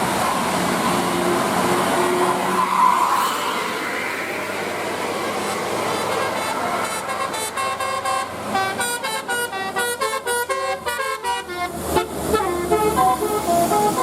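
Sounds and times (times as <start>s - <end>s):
vehicle noise: 0.0s - 14.0s
multi-tone musical bus horn: 5.8s - 14.0s.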